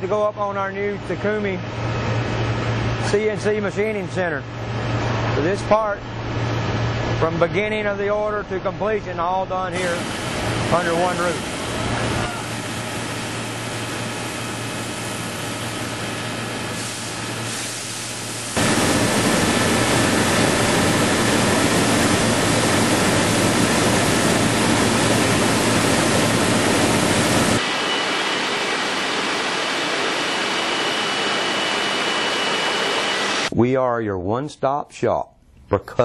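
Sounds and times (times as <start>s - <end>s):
milling machine hissing: 9.8s - 33.5s.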